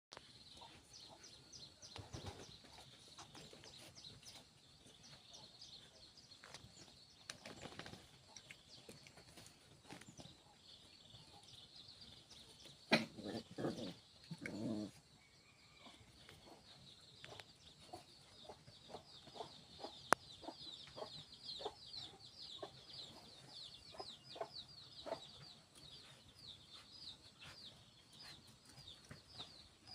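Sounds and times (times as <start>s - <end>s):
birds chirping: 0.1s - 29.9s
puppy growling: 12.9s - 15.0s.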